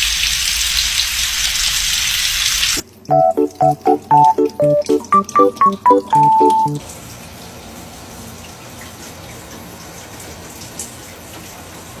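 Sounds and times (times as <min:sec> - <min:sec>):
short musical tune: 0:03.1 - 0:06.8.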